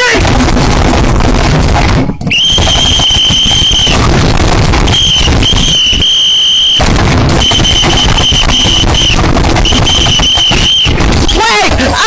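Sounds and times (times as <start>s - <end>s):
crackling noise: 0.0s - 12.0s
distorted high-pitched whistle tone: 2.3s - 4.1s, 4.8s - 11.4s.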